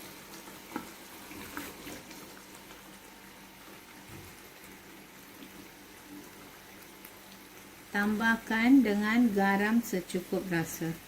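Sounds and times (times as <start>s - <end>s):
sauce bubbling in a wok: 0.0s - 11.0s.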